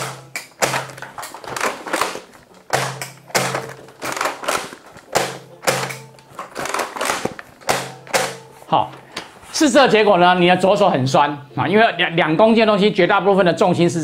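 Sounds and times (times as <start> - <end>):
toy blaster plastic clacks: 0.0 - 8.4.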